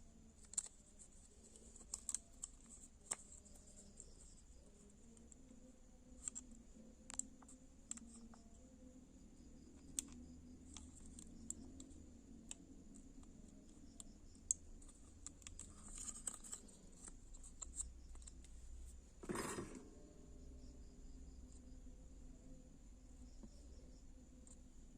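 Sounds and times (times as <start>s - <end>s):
small clicks and snips: 0.3s - 5.4s, 6.1s - 8.6s, 9.8s - 18.6s
scrape or rustle: 19.2s - 19.9s.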